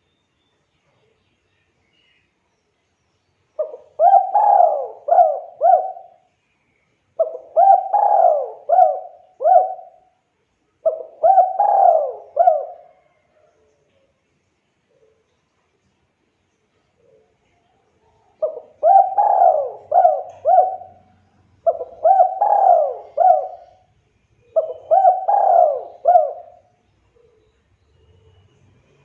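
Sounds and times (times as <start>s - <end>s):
dove cooing: 3.6s - 6.3s, 7.2s - 10.1s, 10.8s - 13.5s, 18.4s - 27.6s.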